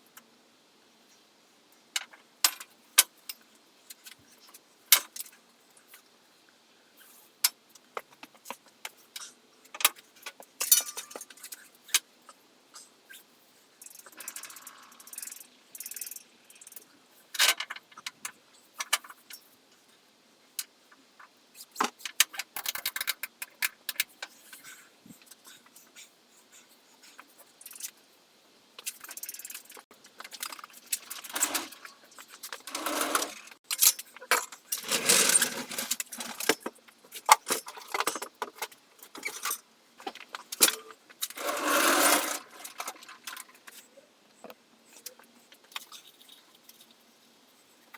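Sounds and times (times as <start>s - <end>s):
metal tools clinking: 10.6s - 11.7s, 28.8s - 36.7s, 40.5s - 43.6s
metal rattling and scraping: 28.9s - 36.7s, 40.5s - 43.8s.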